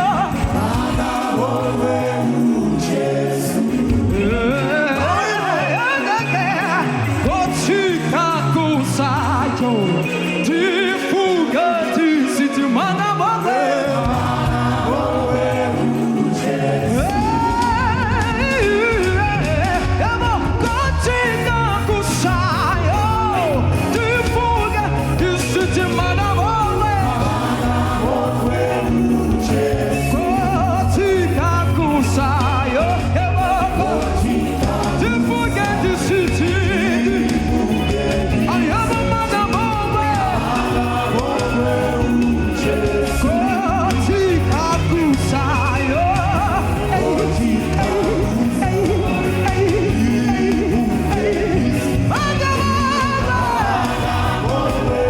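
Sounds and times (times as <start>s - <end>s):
band music: 0.0s - 55.0s
person singing gospel: 0.0s - 55.0s
percussion hits: 14.0s - 55.0s
deep bass: 16.9s - 55.0s.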